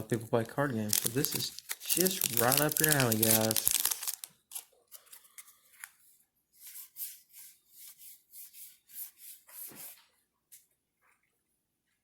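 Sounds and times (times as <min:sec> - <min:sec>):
cards flipping with papery swish: 0:00.9 - 0:06.0.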